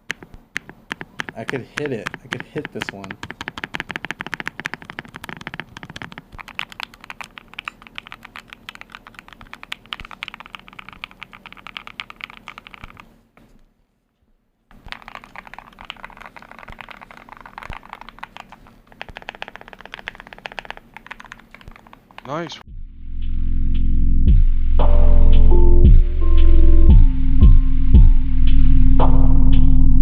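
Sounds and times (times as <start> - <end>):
fast typing on keyboard: 0.0 - 13.1, 14.7 - 22.5.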